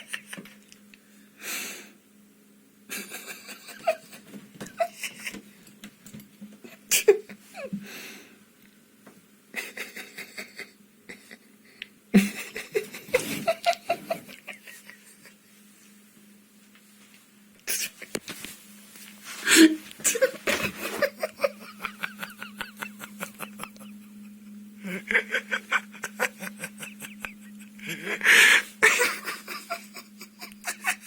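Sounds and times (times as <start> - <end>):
person laughing breathlessly: 0.0 - 0.7, 2.9 - 5.5, 6.6 - 8.3, 9.5 - 15.4, 19.4 - 31.0.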